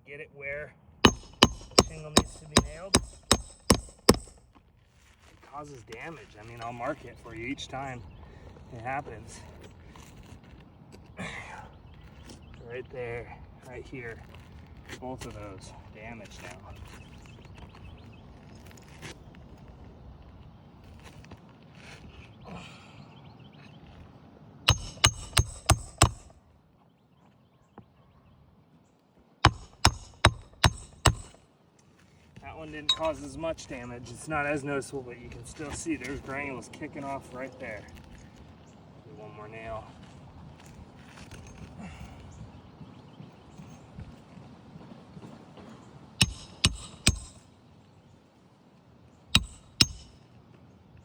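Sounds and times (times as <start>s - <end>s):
hammer driving nails into shingles: 1.0s - 4.5s, 24.7s - 26.4s, 29.4s - 31.4s, 32.9s - 33.2s, 46.2s - 47.4s, 49.4s - 50.2s.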